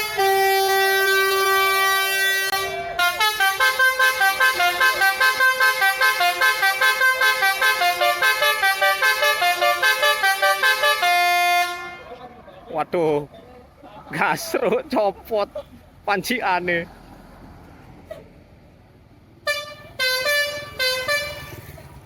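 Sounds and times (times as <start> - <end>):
bus multi-tone horn tune: 0.0 - 12.3, 19.4 - 22.0.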